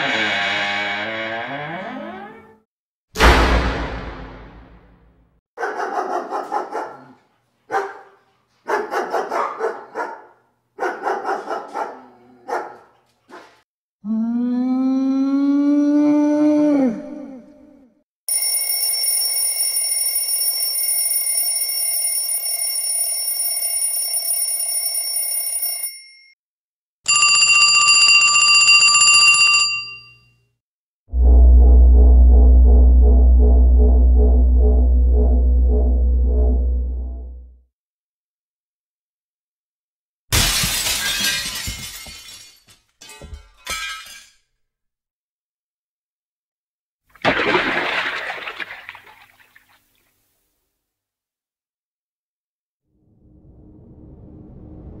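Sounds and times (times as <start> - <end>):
electric bell ringing rapidly: 27.1 - 30.1
glass shattering: 40.3 - 44.5.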